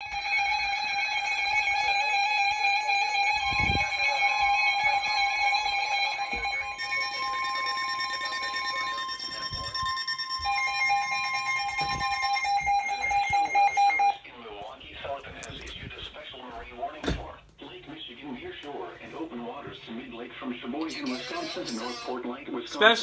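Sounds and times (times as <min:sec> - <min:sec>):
electronic emergency alert tones: 0:03.3 - 0:14.2, 0:20.8 - 0:22.2.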